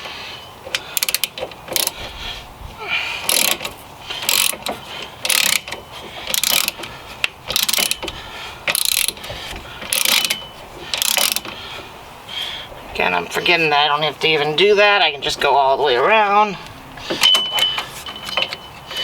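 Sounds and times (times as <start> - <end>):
socket ratchet clicking: 0.7 - 2.0, 3.2 - 8.1, 8.7 - 11.6.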